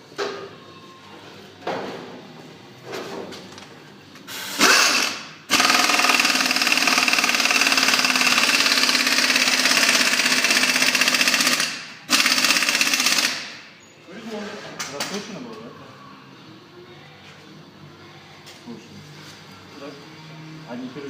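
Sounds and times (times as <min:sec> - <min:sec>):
pneumatic impact wrench hammering: 0:04.4 - 0:13.7.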